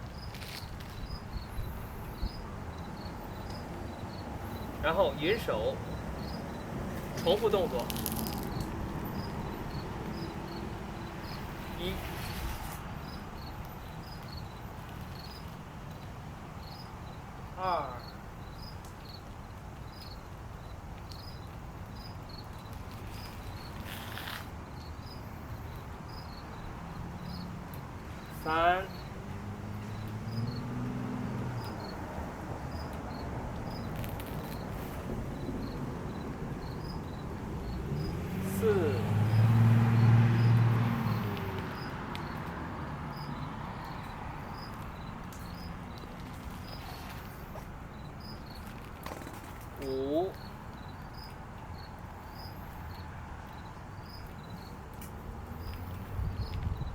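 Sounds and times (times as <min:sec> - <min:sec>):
insects chirping: 0:00.0 - 0:56.9
outdoor background noise: 0:00.0 - 0:56.9
low engine hum: 0:34.6 - 0:47.9.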